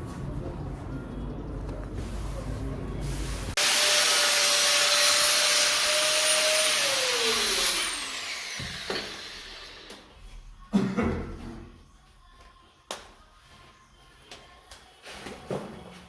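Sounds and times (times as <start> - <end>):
electric machine whining and spinning down: 3.6 - 10.0.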